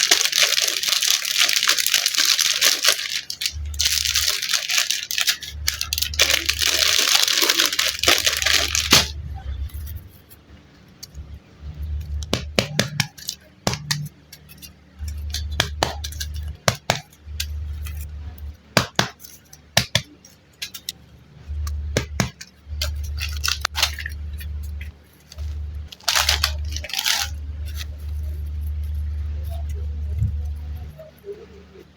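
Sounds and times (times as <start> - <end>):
plastic packets crinkling: 0.0 - 10.3, 11.9 - 31.9
low hum: 20.4 - 31.9.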